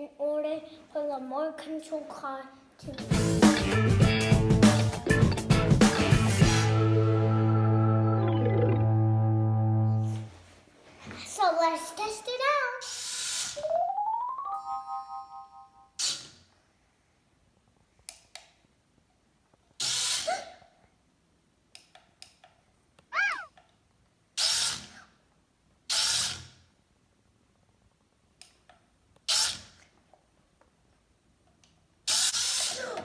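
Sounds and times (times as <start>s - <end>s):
toy car motor whirring: 12.8s - 13.6s, 16.0s - 16.4s, 19.8s - 20.4s, 24.4s - 25.0s, 25.9s - 26.6s, 29.3s - 29.7s, 32.1s - 33.0s
brief squeak: 23.2s - 23.5s.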